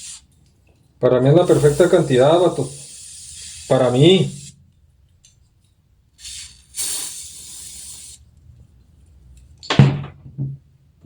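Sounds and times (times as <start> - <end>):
burst of air hissing: 0.0 - 0.3, 1.2 - 4.6, 6.2 - 8.3.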